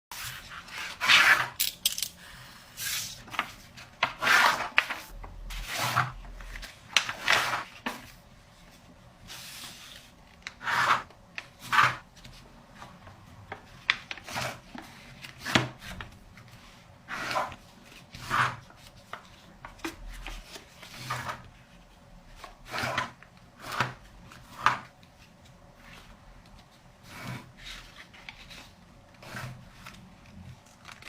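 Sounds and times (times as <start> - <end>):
paper folding and creasing: 25.4 - 31.0.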